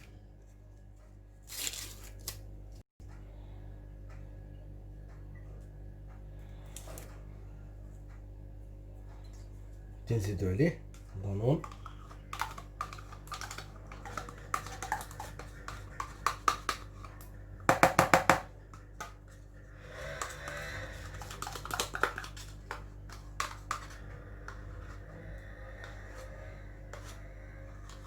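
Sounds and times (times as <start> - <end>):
steady low hum: 2.4 - 28.0
spoon clicking and scraping bowl: 11.0 - 28.0.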